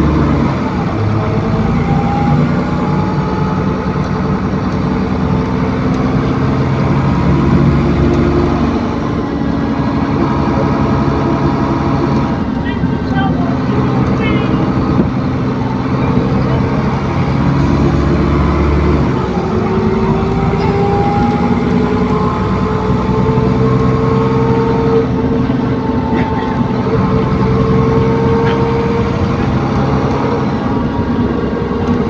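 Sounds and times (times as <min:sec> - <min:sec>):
bus diesel engine running: 0:00.0 - 0:32.0
whooshy whine rising in pitch: 0:14.8 - 0:32.0.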